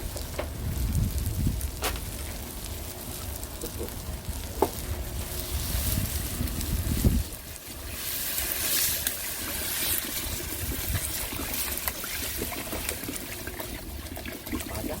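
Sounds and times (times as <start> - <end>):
water pouring and splashing: 5.2 - 15.0.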